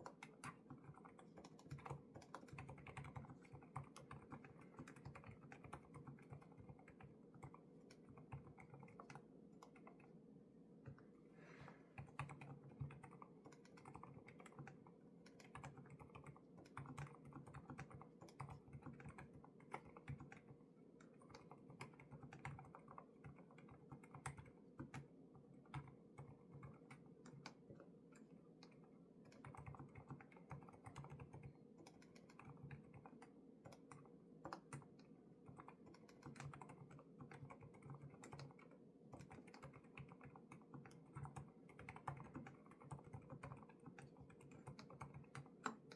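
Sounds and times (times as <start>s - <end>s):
mechanical keyboard typing: 0.0s - 10.2s, 12.0s - 45.9s.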